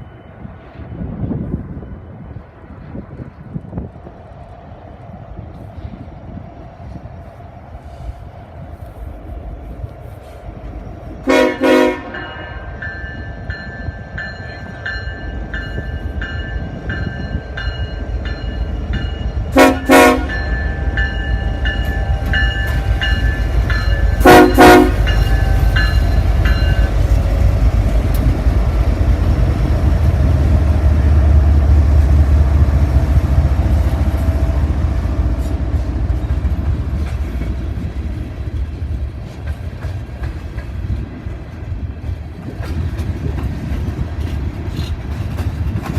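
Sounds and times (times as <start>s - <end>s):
train rumble: 0.0s - 45.9s
locomotive horn blasts: 11.2s - 12.4s, 19.5s - 20.6s, 24.2s - 25.8s.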